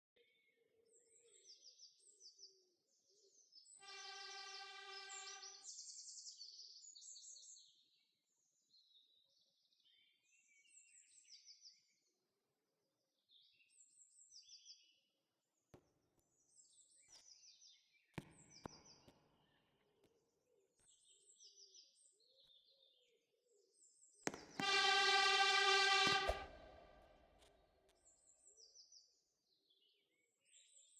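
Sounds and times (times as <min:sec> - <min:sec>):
diesel locomotive horn: 0:03.8 - 0:05.6, 0:24.6 - 0:27.1.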